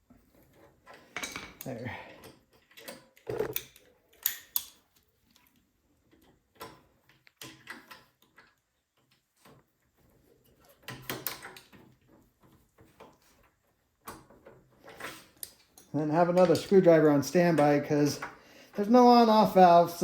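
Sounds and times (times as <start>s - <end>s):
tools clicking on metal parts: 1.2s - 4.8s.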